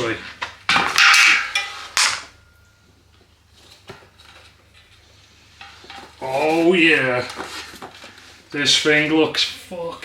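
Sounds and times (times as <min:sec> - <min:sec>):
bike tyre scraping rustle: 0:03.5 - 0:08.9.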